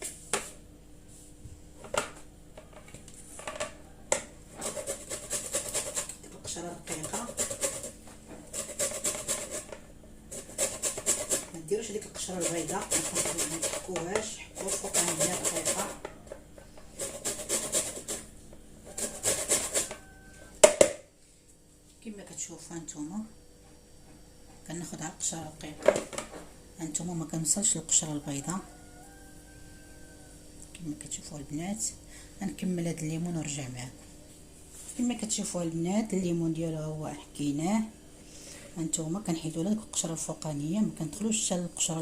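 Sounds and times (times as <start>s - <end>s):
lemon rind grating: 4.5s - 16.0s, 16.9s - 18.3s, 18.9s - 20.2s.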